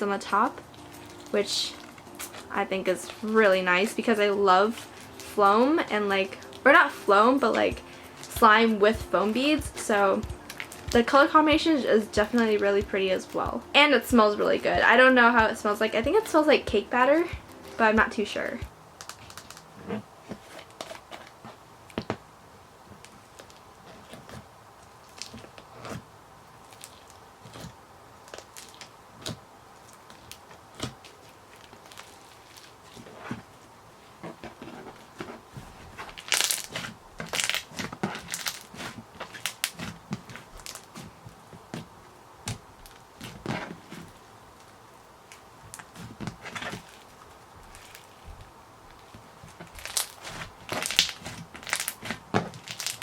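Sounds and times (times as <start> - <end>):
slime squishing with sticky pops: 36.2 - 48.3, 49.0 - 53.0
slime being squished by hand: 49.6 - 53.0.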